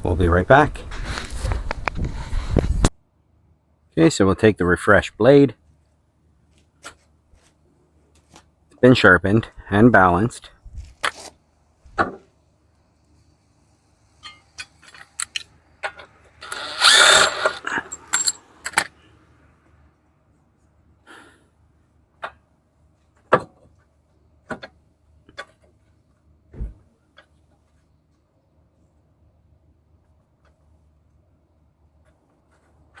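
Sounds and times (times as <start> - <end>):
metal tools clicking and knocking: 14.2 - 15.5, 16.4 - 18.4
power tool burst: 16.4 - 18.4.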